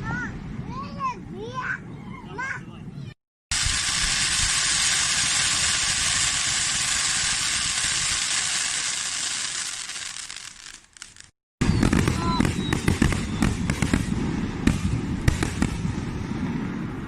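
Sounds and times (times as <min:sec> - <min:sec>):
sparkler hissing: 0:03.5 - 0:11.4.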